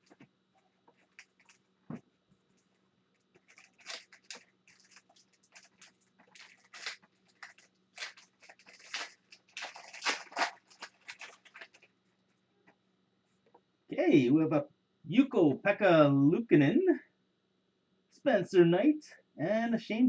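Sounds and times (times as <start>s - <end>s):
foil wrapper crinkling and tearing: 0.9s - 1.6s, 3.2s - 11.9s
cards being handled: 3.3s - 11.9s.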